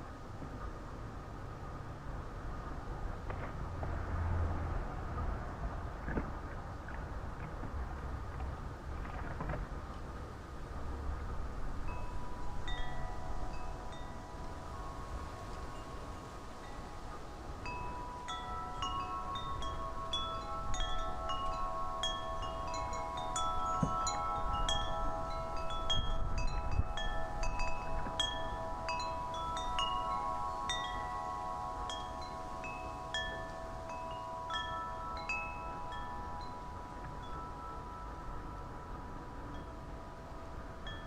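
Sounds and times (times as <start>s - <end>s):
low wind rumble: 0.0s - 41.0s
wind chimes ringing: 11.8s - 41.0s.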